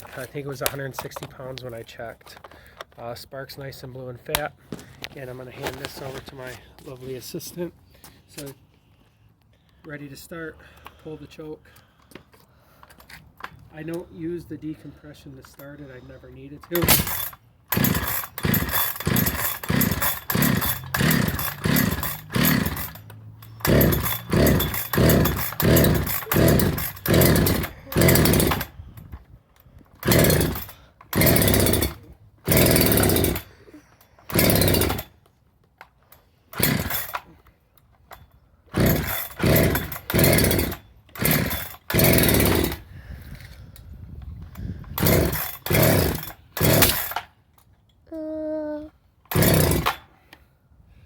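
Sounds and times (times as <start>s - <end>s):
chainsaw engine cranking: 15.4s - 47.7s, 49.2s - 50.5s.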